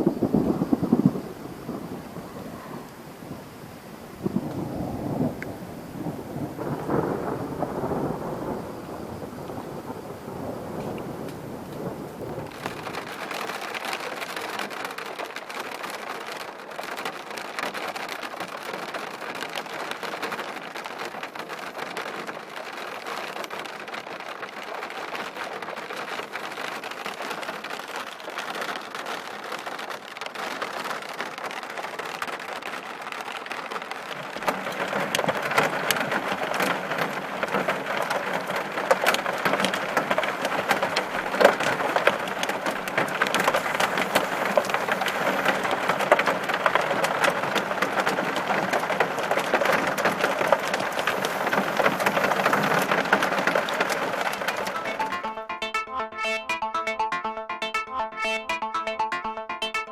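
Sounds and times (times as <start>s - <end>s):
rushing crackling water: 10.8s - 54.6s.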